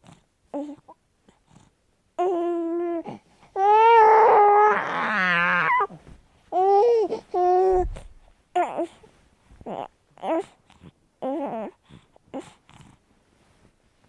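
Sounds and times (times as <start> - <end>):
fox kit whining and crying: 3.6 - 6.0.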